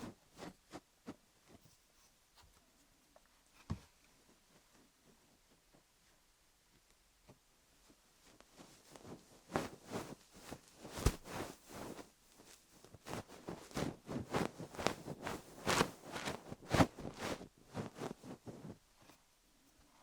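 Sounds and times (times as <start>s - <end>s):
fluff rustling on microphone: 7.8s - 19.2s.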